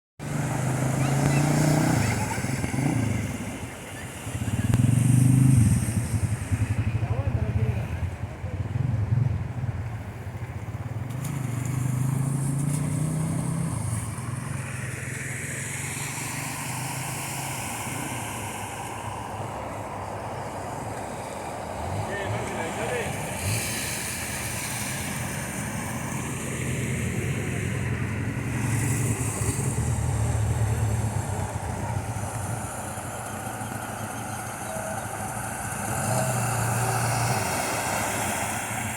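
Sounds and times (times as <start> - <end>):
vehicle engine running: 0.2 - 16.4, 19.4 - 38.9
steady rushing noise: 17.4 - 38.9.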